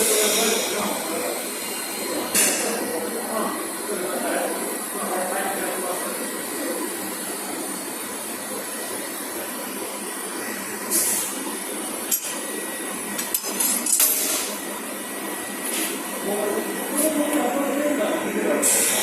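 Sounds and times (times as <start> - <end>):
workshop noise: 0.0 - 5.2, 10.3 - 19.0.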